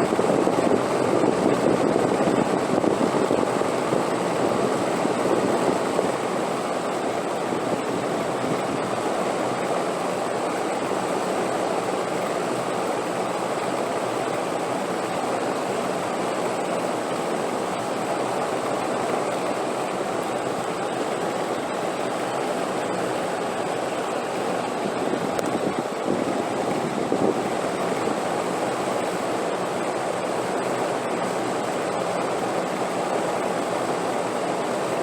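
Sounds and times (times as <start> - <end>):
rushing wind: 0.0 - 35.0.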